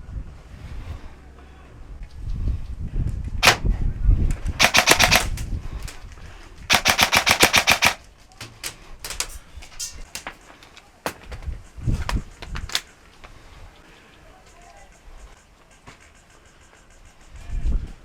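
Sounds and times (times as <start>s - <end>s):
airsoft rifle firing: 3.4s - 3.8s, 4.6s - 6.0s, 6.7s - 10.5s.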